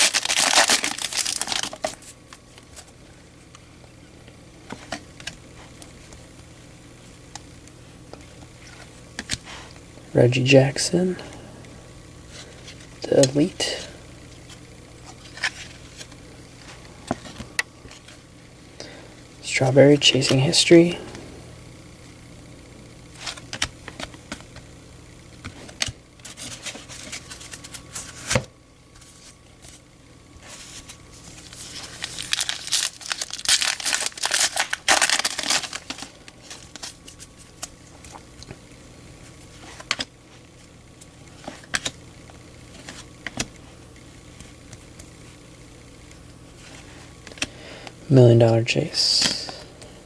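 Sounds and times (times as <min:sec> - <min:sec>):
foil wrapper crinkling and tearing: 0:00.0 - 0:02.8, 0:30.6 - 0:38.2.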